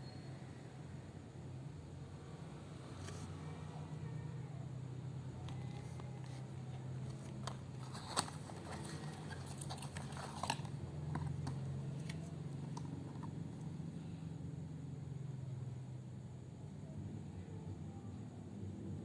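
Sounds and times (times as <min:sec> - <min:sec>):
steady low hum: 0:00.0 - 0:19.0
packaging crinkling: 0:05.5 - 0:13.3.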